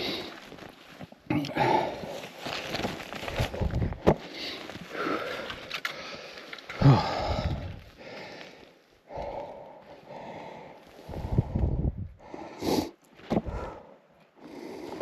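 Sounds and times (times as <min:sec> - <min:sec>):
man breathing heavily: 0:00.0 - 0:00.5, 0:01.4 - 0:15.0
man grunting: 0:06.8 - 0:07.7.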